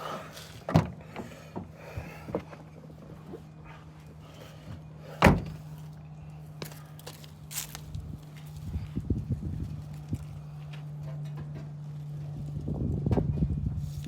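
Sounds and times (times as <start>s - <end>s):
steady low hum: 0.0s - 14.0s
heavy thunks: 0.6s - 3.4s, 4.6s - 5.7s.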